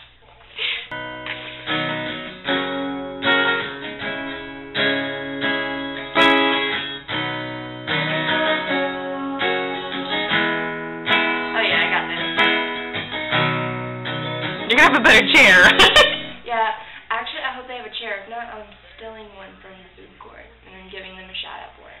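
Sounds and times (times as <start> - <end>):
acoustic guitar strummed: 0.9 - 16.5.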